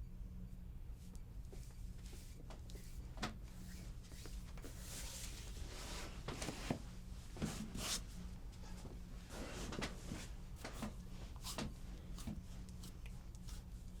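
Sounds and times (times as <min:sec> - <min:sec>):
steady low hum: 0:00.0 - 0:14.0
hands rubbing over skin: 0:10.2 - 0:13.7.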